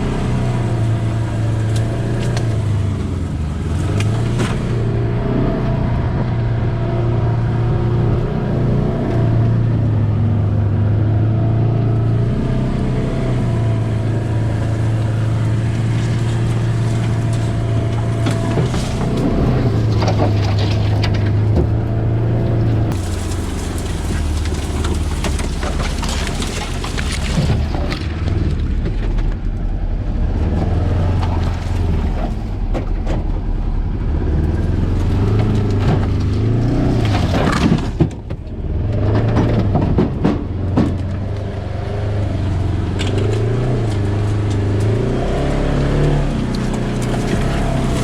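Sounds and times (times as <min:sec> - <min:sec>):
branches scraping vehicle: 0:00.0 - 0:48.0
vehicle engine running: 0:00.0 - 0:48.0.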